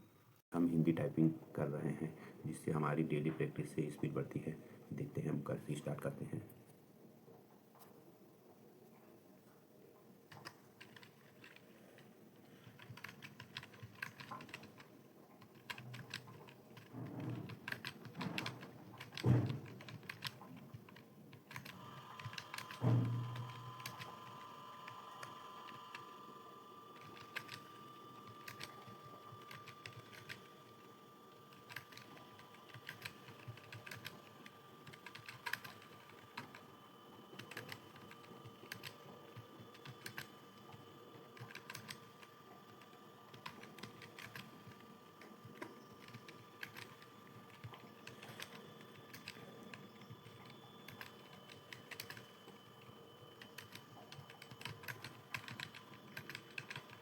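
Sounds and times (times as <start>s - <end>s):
faint steady tone: 0.0s - 57.0s.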